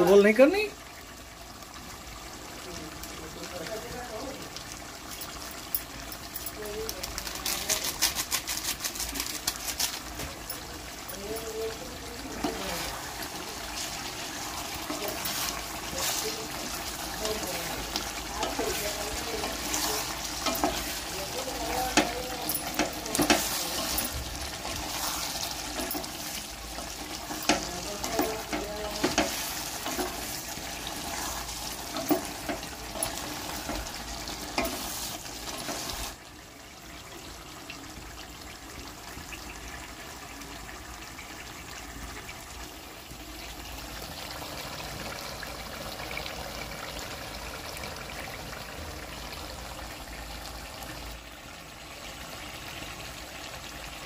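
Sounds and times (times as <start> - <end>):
chicken sizzling in a pan: 0.0 - 54.0
utensil scraping a pan: 12.3 - 36.2.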